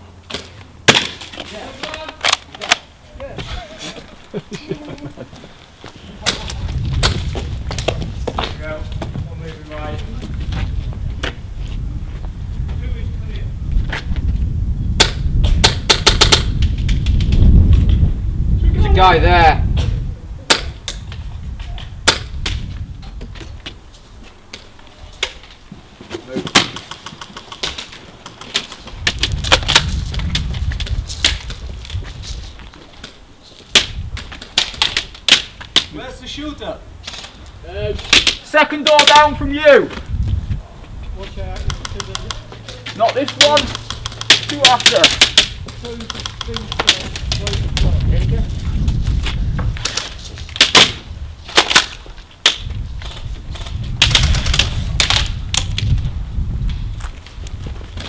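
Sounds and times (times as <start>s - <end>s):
handling and movement rumble: 0.0s - 58.0s
airsoft guns firing: 0.4s - 1.3s.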